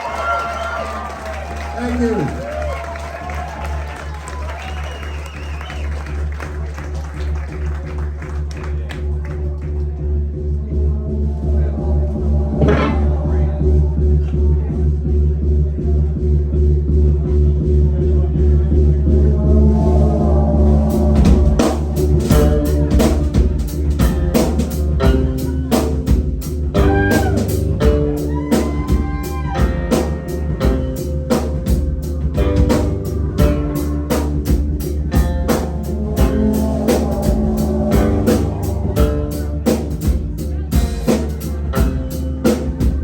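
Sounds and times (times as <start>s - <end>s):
deep bass line: 0.0s - 43.0s
drum kit beat: 19.6s - 43.0s.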